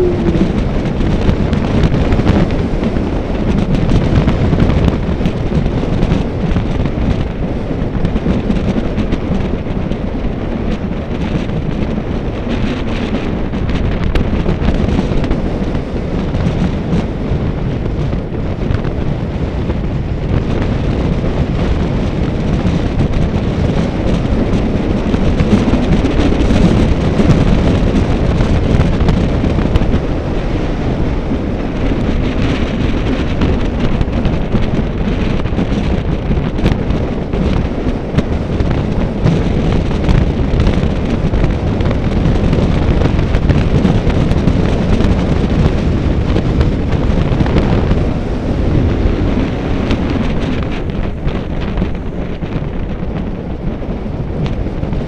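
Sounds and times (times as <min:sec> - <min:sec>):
wind buffeting microphone: 0:00.0 - 0:55.0.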